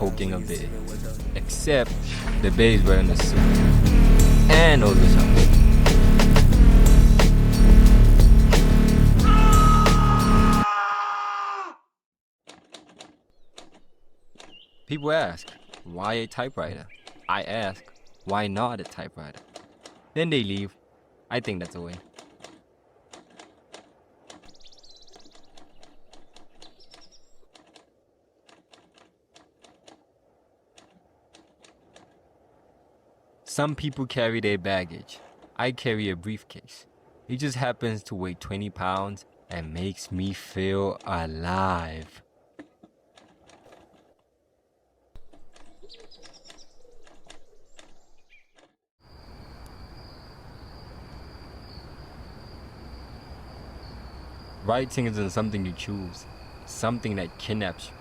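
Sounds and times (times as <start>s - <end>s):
high insect trill: 49.0s - 58.0s
outdoor background hiss: 49.0s - 58.0s.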